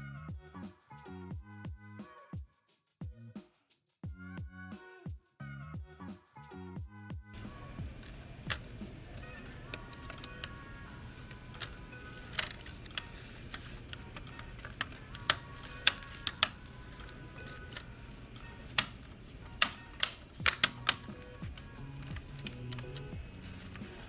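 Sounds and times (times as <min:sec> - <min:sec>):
soft background music: 0:05.8 - 0:24.0
plastic clicks and taps on laptop: 0:07.4 - 0:24.0.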